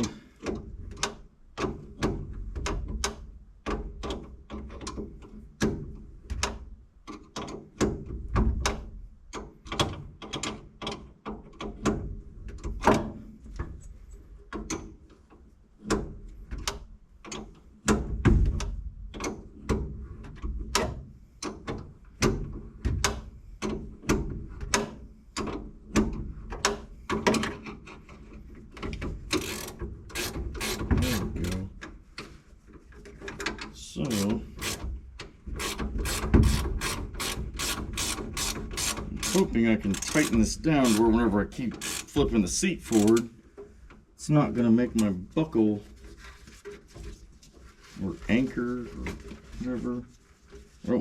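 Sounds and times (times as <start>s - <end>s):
ratchet wrench clicking: 29.3s - 31.6s, 34.1s - 34.8s, 35.6s - 41.1s, 41.7s - 42.2s, 42.9s - 43.2s.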